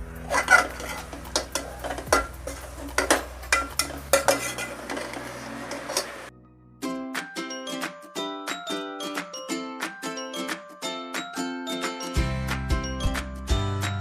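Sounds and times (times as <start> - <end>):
utensil scraping a pan: 0.2 - 6.3.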